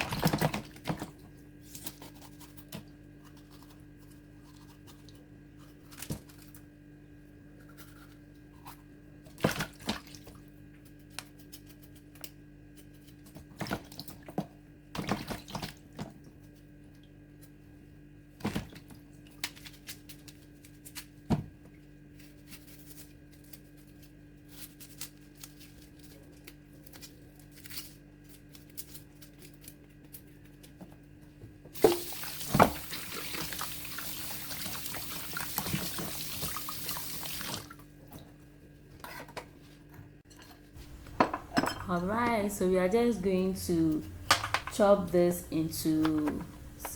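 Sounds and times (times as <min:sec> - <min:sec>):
tap water running: 0:31.8 - 0:37.8.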